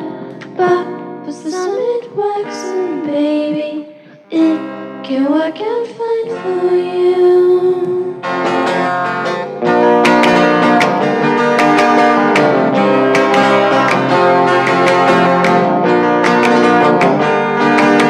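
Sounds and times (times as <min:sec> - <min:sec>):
indie pop song with vocals: 0:00.0 - 0:09.1.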